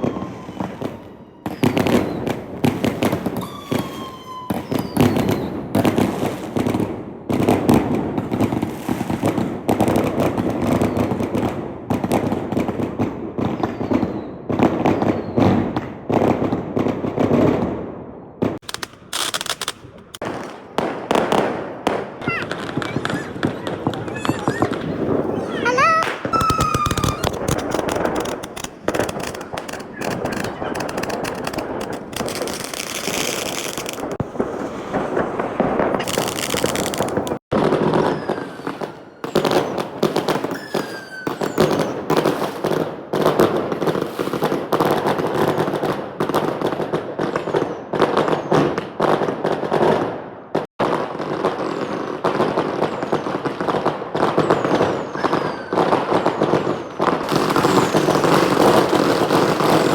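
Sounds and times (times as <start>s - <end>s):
falling firework whistles: 0.0s - 6.8s, 10.6s - 11.3s, 13.4s - 15.6s, 18.8s - 42.7s, 54.2s - 59.9s
fireworks crackling bangs: 0.0s - 59.9s.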